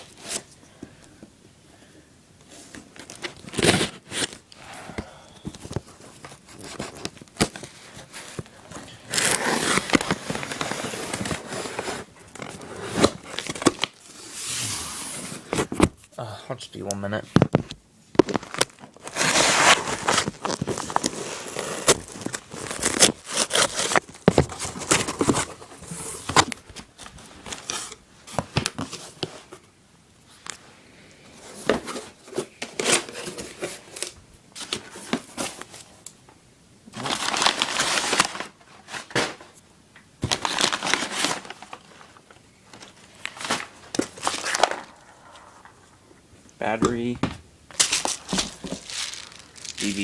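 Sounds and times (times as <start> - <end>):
packaging crinkling and tearing: 5.6 - 14.2, 18.2 - 26.6, 36.9 - 39.4, 40.2 - 45.1, 47.7 - 50.0
items knocking and clicking: 46.8 - 50.0.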